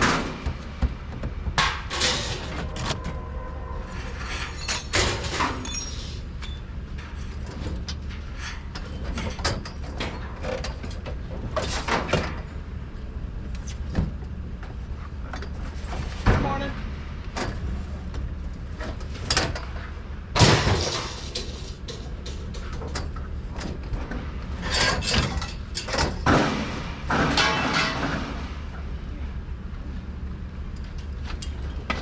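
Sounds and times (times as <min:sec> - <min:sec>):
low vehicle rumble: 0:00.0 - 0:08.2.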